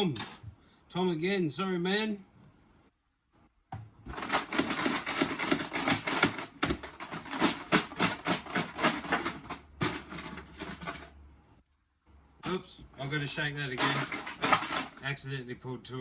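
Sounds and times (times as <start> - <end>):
tokens rattling in a container: 4.1 - 11.2, 13.7 - 15.0.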